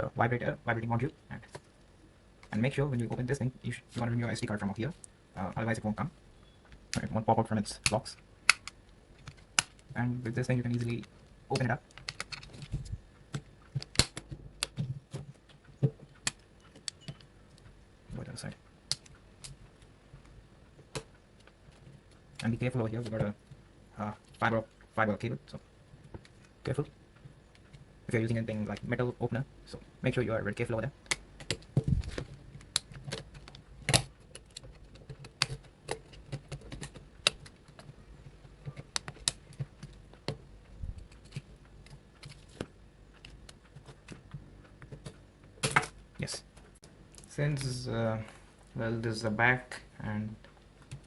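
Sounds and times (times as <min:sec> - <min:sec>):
plastic clicks and snaps: 0:07.7 - 0:09.9, 0:10.6 - 0:17.7, 0:31.0 - 0:37.9.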